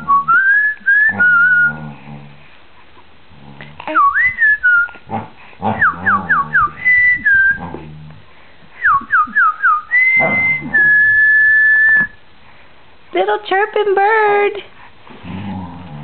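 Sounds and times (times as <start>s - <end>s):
person whistling bird-like tune: 0.0s - 1.8s, 4.0s - 5.0s, 5.8s - 7.6s, 8.8s - 12.2s.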